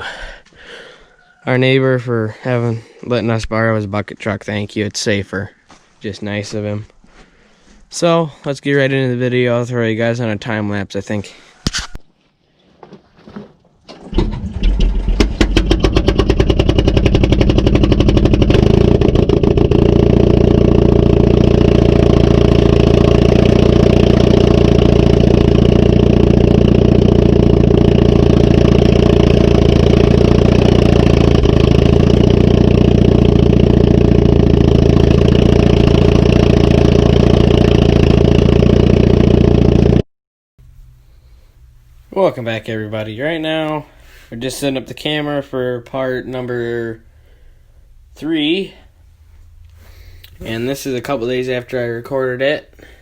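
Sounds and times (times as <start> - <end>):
truck engine starting and idling: 13.8 - 40.0, 46.2 - 53.0.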